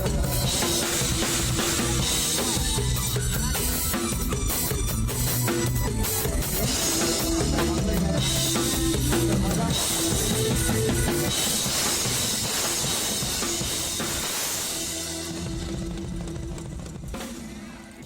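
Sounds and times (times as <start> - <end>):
bass drum: 0.0 - 17.1
live band music: 0.0 - 18.0.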